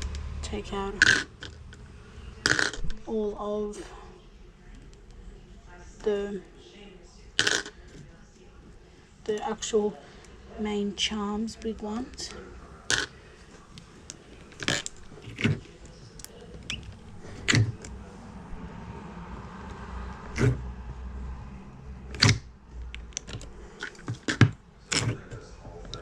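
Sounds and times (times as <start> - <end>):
plastic items clicking and tapping: 13.8 - 17.9, 22.1 - 26.0.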